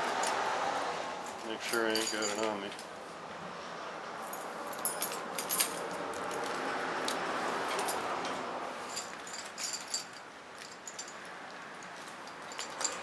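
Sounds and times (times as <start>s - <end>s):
keys clinking in a pocket: 4.3s - 6.6s, 8.9s - 13.0s.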